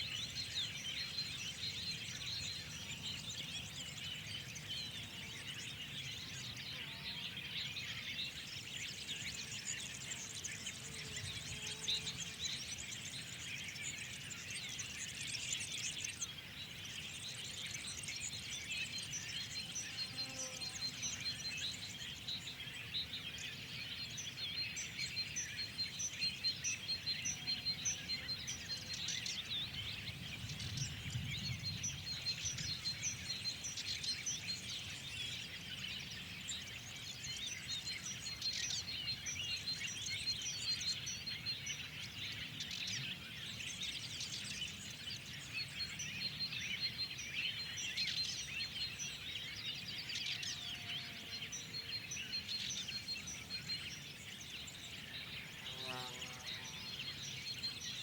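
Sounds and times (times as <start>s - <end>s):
songbirds chirping and trilling: 0.0s - 58.0s.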